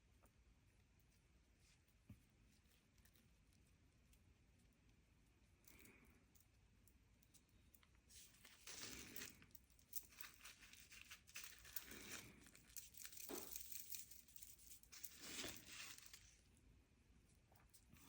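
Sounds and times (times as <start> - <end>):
faint rubbing and scraping: 8.1 - 16.4.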